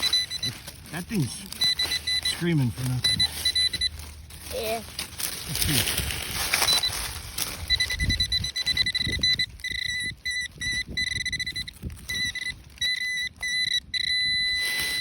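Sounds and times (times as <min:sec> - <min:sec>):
metal detector high tone: 0:00.0 - 0:04.7, 0:06.6 - 0:15.0.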